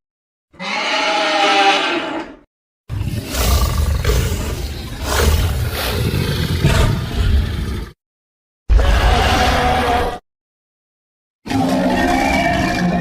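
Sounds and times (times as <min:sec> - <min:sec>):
deep rough monster roar: 0:02.9 - 0:08.0
monster roar: 0:02.9 - 0:08.0, 0:08.7 - 0:10.2, 0:11.5 - 0:13.0.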